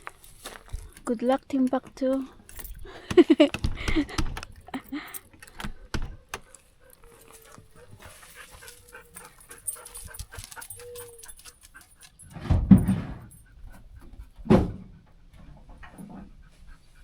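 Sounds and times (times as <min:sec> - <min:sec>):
dog whining softly: 0:06.2 - 0:12.3.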